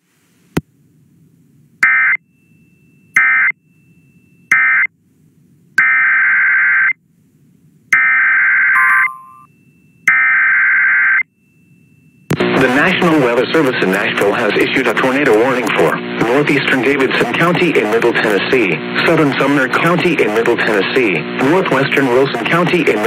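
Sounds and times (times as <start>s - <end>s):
digital data squawks: 1.8s - 4.9s.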